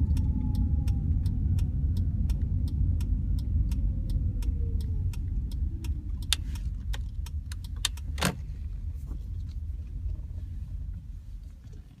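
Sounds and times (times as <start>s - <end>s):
sharp clicks: 0.0s - 8.5s
car engine rumble: 0.0s - 12.0s.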